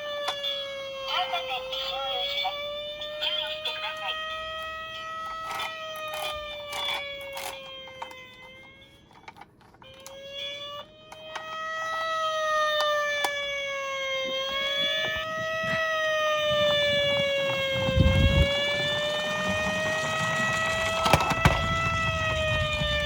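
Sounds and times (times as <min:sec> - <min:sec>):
toy siren wailing: 0:00.0 - 0:23.0
toy cars rolling down a slope: 0:05.2 - 0:10.2, 0:18.4 - 0:22.6.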